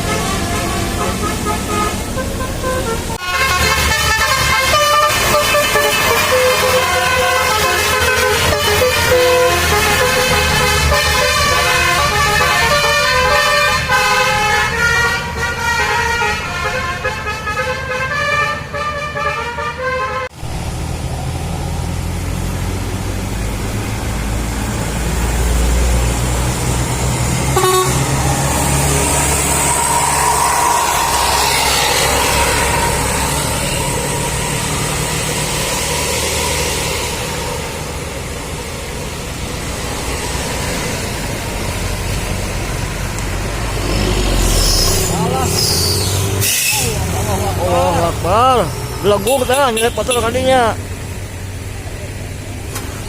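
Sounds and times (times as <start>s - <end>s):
multi-tone bus horn melody: 0.0s - 20.4s, 26.9s - 37.4s, 48.0s - 50.8s
bus engine rumble: 0.0s - 53.0s
road traffic noise: 0.0s - 53.0s.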